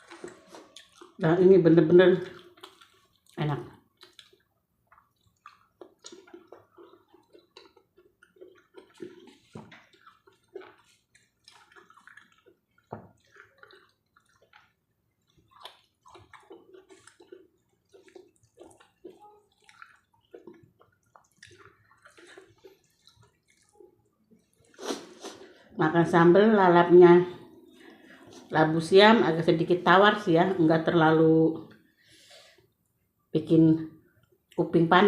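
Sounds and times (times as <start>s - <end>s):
person chewing food: 0.0s - 1.2s, 2.2s - 25.7s, 27.4s - 28.6s.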